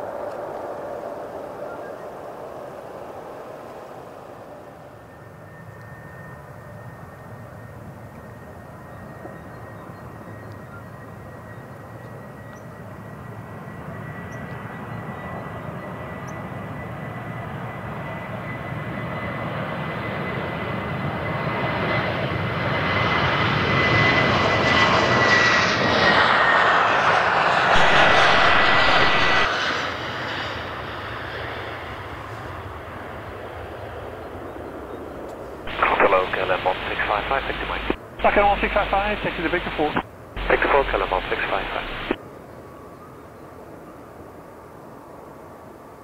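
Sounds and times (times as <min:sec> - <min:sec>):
jet engines passing: 0:11.0 - 0:42.2.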